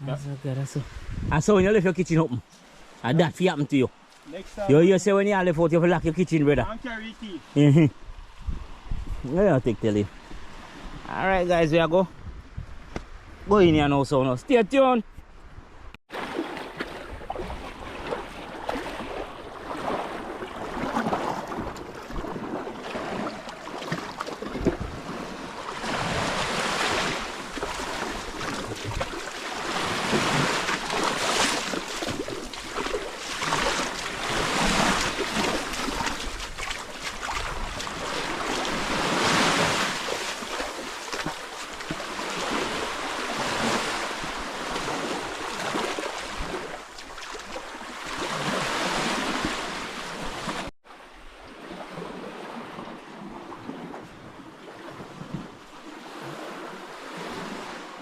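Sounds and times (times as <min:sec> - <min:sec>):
wind buffeting microphone: 0:00.9 - 0:01.8, 0:07.9 - 0:09.5, 0:12.1 - 0:13.9, 0:24.4 - 0:30.6, 0:31.3 - 0:39.9
sea waves washing: 0:16.1 - 0:50.7.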